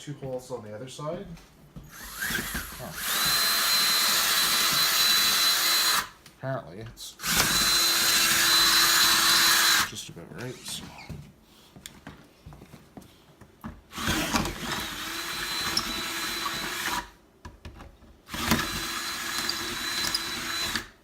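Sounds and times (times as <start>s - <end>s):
power drill whining: 1.9s - 6.2s, 7.2s - 9.9s, 13.9s - 17.1s, 18.3s - 21.0s.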